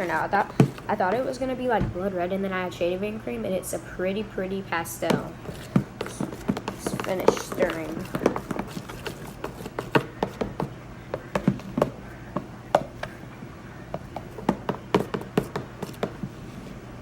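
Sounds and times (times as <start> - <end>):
slime squelching: 0.0 - 2.0, 4.8 - 16.6
utensil tapping bowl: 5.0 - 13.2, 13.9 - 16.3.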